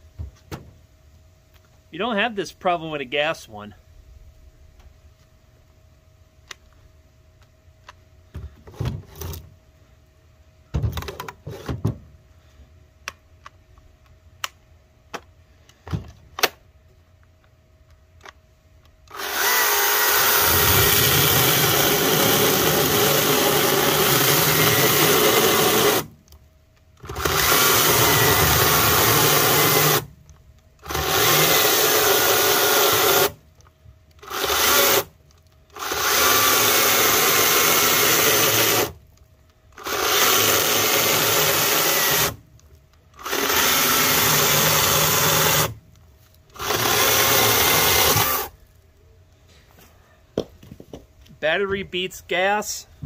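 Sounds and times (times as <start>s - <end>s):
chainsaw cutting wood: 19.1s - 26.2s, 27.0s - 30.2s, 30.8s - 33.4s, 34.2s - 39.0s, 39.7s - 42.4s, 43.1s - 45.8s, 46.5s - 48.6s.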